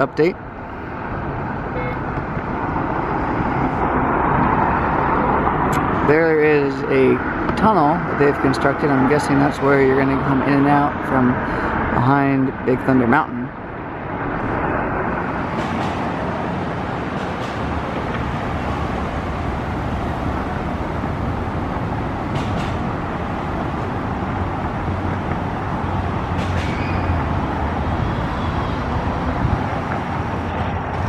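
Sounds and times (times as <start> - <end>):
passing vehicles rushing: 0.0 - 31.0
low engine hum: 13.6 - 31.0.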